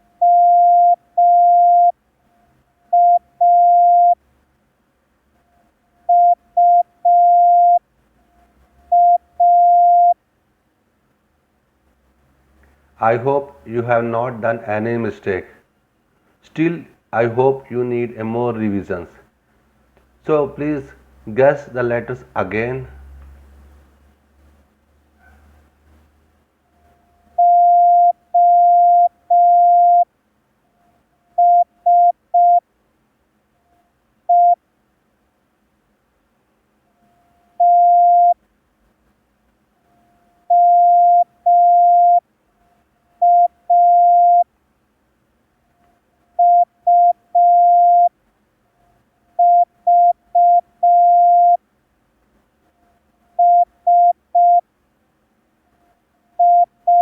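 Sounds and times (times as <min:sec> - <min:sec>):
morse code beeps: 0:00.2 - 0:01.9, 0:03.0 - 0:04.2, 0:06.1 - 0:07.8, 0:08.9 - 0:10.2, 0:27.4 - 0:30.0, 0:31.4 - 0:32.6, 0:34.3 - 0:34.6, 0:37.6 - 0:38.4, 0:40.5 - 0:42.2, 0:43.2 - 0:44.4, 0:46.4 - 0:48.1, 0:49.4 - 0:51.6, 0:53.4 - 0:54.6, 0:56.4 - 0:57.0.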